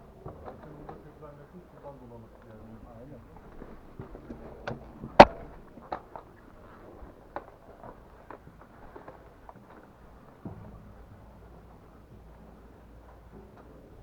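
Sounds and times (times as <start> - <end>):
loud sharp crack: 5.2 - 5.6.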